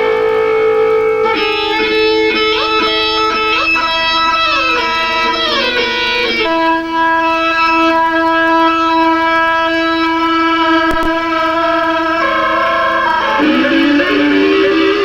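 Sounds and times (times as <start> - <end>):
brief click: 10.8 - 11.4.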